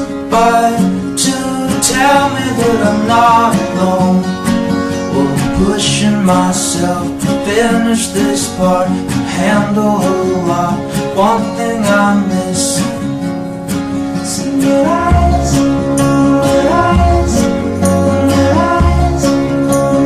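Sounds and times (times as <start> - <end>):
person singing: 0.0 - 13.0, 14.2 - 20.0
acoustic guitar: 0.0 - 20.0
deep bass notes: 14.8 - 20.0.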